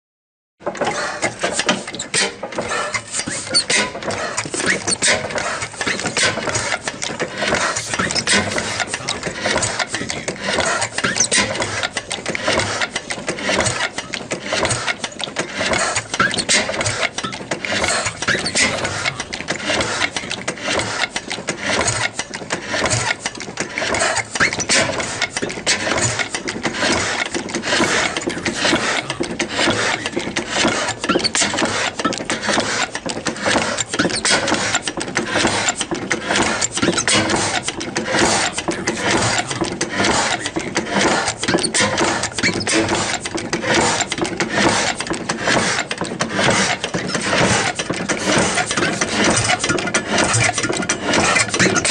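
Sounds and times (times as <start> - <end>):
steam engine clattering: 0.7 - 51.9.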